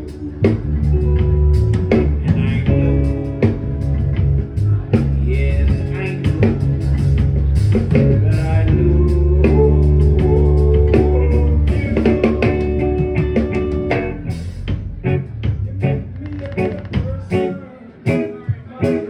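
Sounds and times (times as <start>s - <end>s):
person singing: 0.0s - 3.8s, 4.6s - 14.2s
bass guitar: 0.0s - 19.0s
drums: 0.0s - 19.0s
electric guitar chords: 0.0s - 19.0s.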